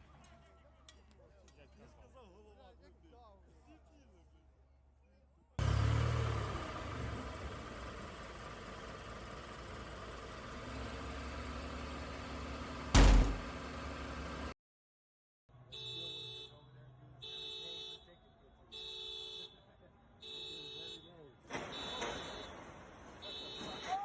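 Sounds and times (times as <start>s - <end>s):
loud crash: 13.0s - 13.4s.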